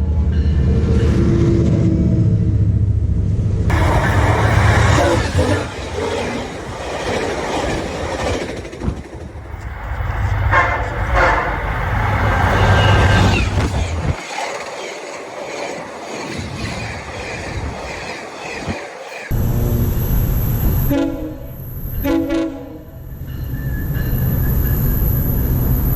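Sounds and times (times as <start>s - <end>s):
heavy train rumble: 0.0s - 25.9s
train wheels clacking: 3.7s - 19.4s
train horn: 10.2s - 13.7s, 20.8s - 23.1s.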